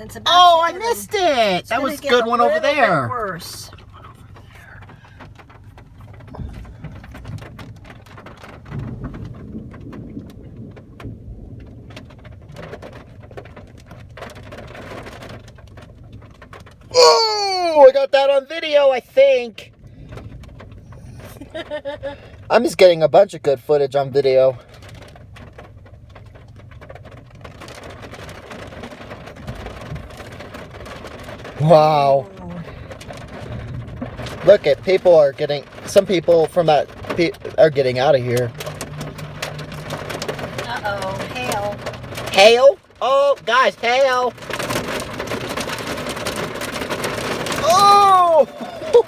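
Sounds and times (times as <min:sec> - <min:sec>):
thunder rumbling: 0:00.0 - 0:15.8, 0:28.1 - 0:49.0
rain on car roof: 0:00.0 - 0:49.0.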